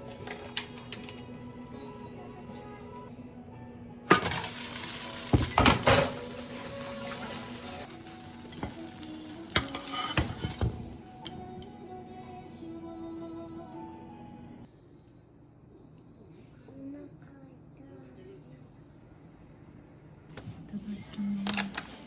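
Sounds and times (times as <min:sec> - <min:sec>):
food sizzling in oil: 0:04.1 - 0:11.2
utensil clattering against pan: 0:09.5 - 0:10.9.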